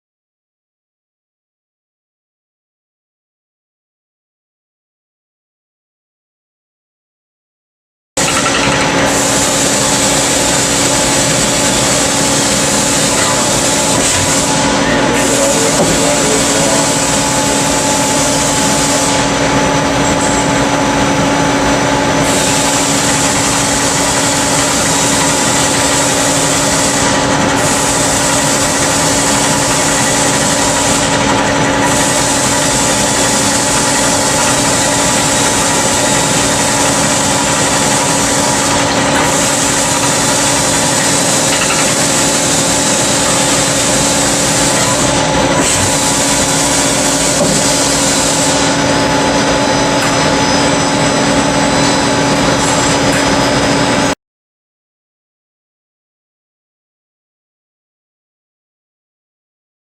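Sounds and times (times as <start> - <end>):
machine hum: 8.2 - 54.2.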